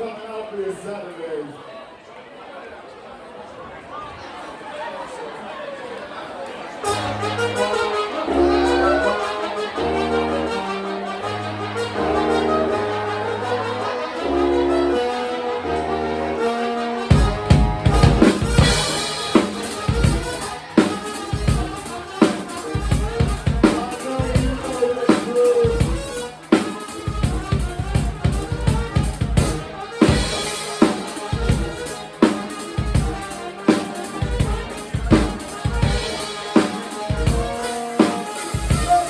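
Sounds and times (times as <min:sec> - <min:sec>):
held horn notes: 0:06.8 - 0:39.0
drum kit playing groove: 0:15.7 - 0:39.0.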